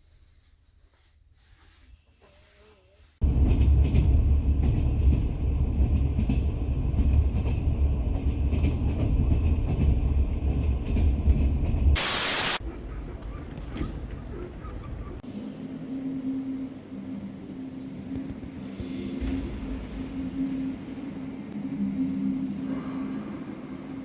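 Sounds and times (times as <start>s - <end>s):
train low rumble: 0.0s - 24.0s
loud hiss burst: 12.0s - 12.6s.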